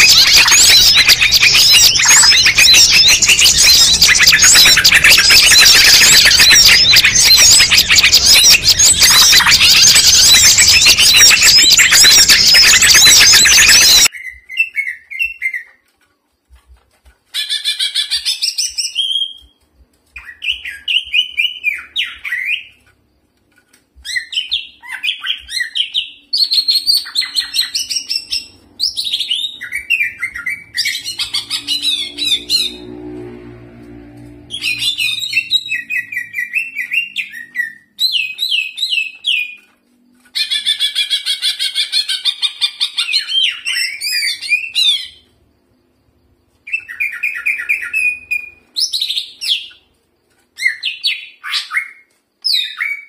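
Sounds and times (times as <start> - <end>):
songbird chirps and trills: 0.0 - 53.0.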